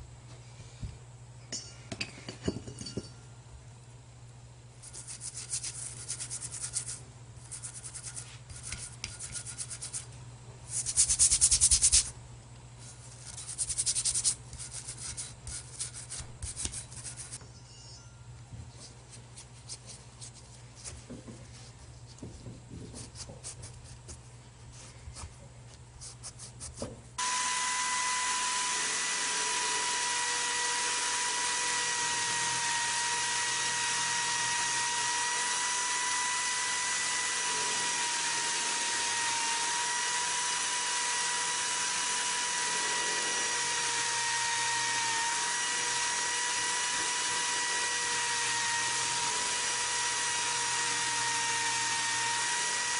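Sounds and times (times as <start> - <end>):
power tool whining: 27.2 - 52.9.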